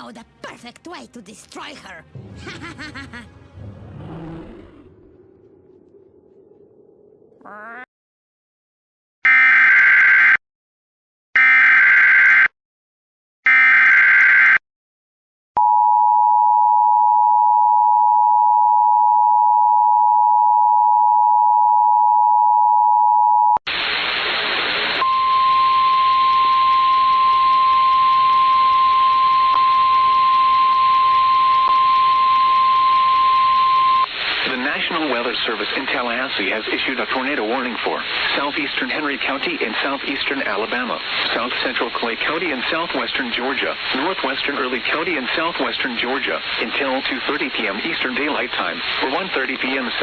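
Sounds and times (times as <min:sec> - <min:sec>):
burst of static: 0:23.7 - 0:27.2, 0:34.1 - 0:50.0.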